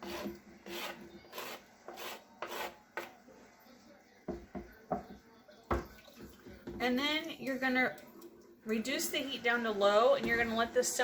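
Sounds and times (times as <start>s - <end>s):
utensil scraping: 0.0s - 3.2s.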